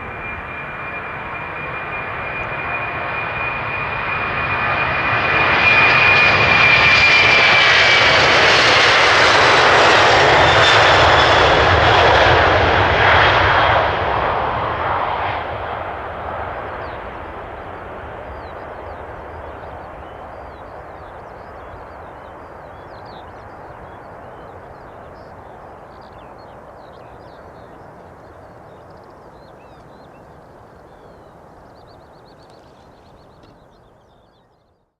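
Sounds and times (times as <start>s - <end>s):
jet airliner climbing: 0.1s - 22.7s
small birds chirping: 16.7s - 34.9s.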